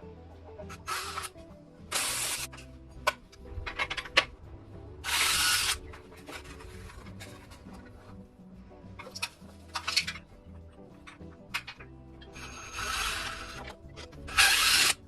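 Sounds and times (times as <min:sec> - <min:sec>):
quiet background music: 0:00.0 - 0:15.0
sharp clicks and knocks: 0:09.0 - 0:12.0.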